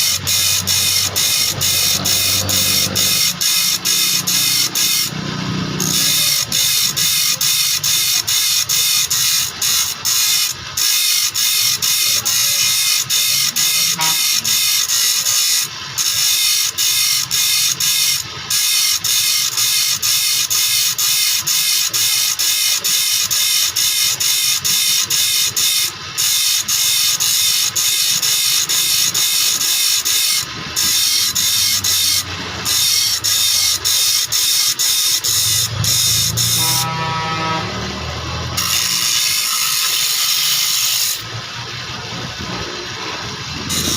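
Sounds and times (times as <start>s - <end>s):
file rasping saw teeth: 0.0s - 5.2s, 5.8s - 36.9s, 38.6s - 41.2s, 43.7s - 43.9s.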